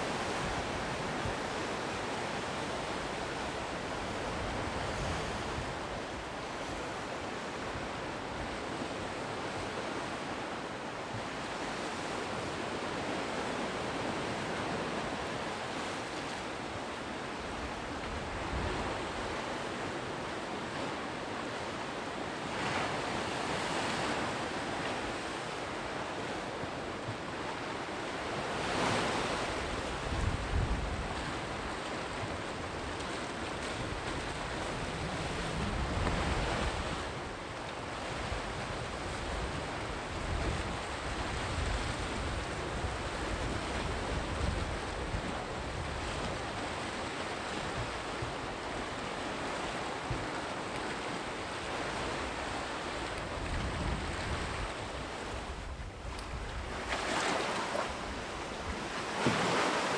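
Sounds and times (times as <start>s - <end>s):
wind rumble on microphone: 0.0s - 9.6s, 28.8s - 59.3s
sea surf washing on shore: 0.0s - 59.9s.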